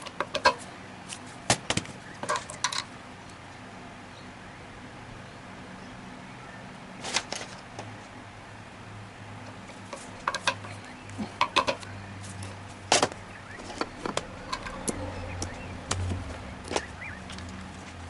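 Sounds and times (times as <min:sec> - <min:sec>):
metal tools clicking and knocking: 0:02.2 - 0:02.9, 0:09.9 - 0:11.9, 0:13.6 - 0:15.0.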